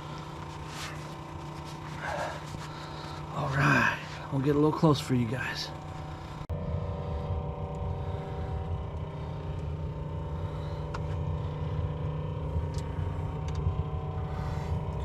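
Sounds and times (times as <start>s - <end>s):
motor running with low rumble: 0.0s - 15.0s.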